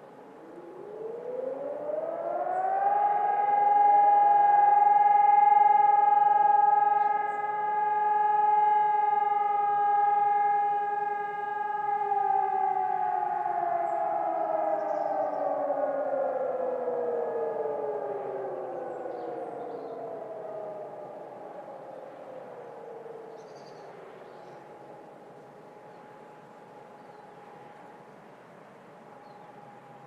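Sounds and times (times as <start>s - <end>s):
electronic sirens sounding alarm: 0.0s - 23.4s.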